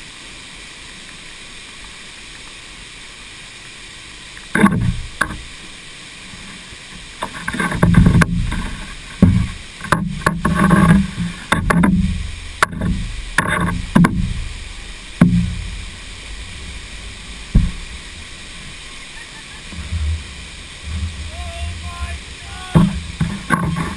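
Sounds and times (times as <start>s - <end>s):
steady rush of water: 0.0s - 23.9s
water splashing and sloshing: 0.0s - 23.9s
sharp knocks: 7.2s - 14.6s, 15.2s - 15.9s, 17.5s - 18.0s, 22.7s - 23.9s.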